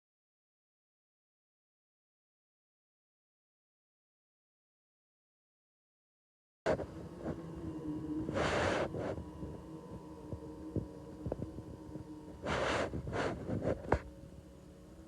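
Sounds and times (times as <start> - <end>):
robot vacuum motor hum: 6.7 - 15.0.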